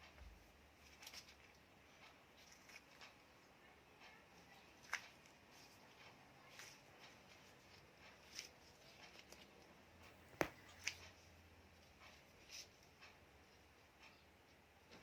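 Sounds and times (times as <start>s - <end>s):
faint handling sounds: 0.8s - 11.2s
foot joint popping: 10.0s - 10.8s.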